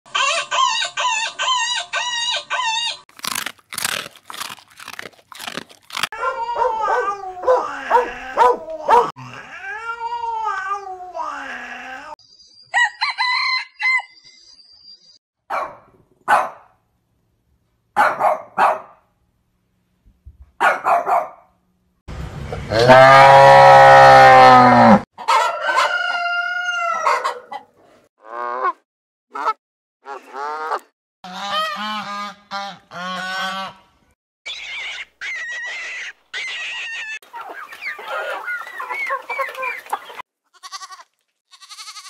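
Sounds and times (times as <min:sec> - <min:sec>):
chicken calling: 0:00.1 - 0:03.0, 0:34.5 - 0:42.0
dogs barking: 0:06.1 - 0:09.1, 0:15.5 - 0:16.7, 0:18.0 - 0:19.0, 0:20.6 - 0:21.5, 0:25.2 - 0:26.2, 0:27.0 - 0:27.8.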